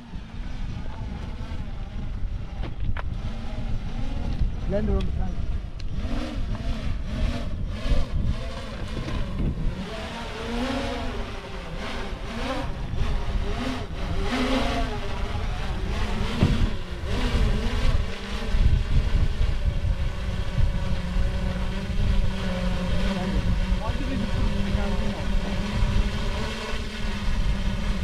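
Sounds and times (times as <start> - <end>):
steady low hum: 0.0 - 28.0
wind buffeting microphone: 0.0 - 28.0.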